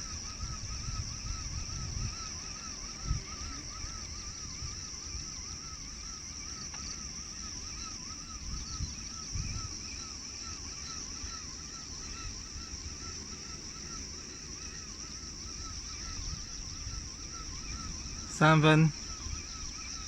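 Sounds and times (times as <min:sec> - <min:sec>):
steady high-pitched hiss: 0:00.0 - 0:20.0
bird call: 0:16.9 - 0:20.0.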